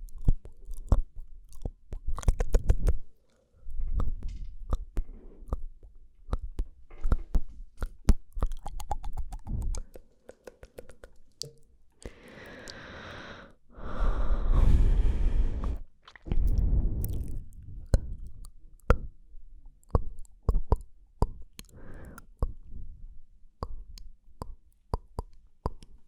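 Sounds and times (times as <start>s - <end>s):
tongue and lip clicks: 0.0s - 3.2s, 3.8s - 12.8s, 15.6s - 22.8s, 23.5s - 26.0s
breathy rushes of air: 13.8s - 18.2s.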